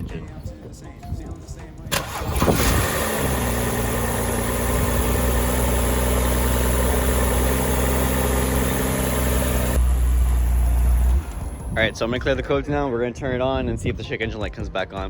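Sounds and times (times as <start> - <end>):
car engine idling: 1.9 - 11.9.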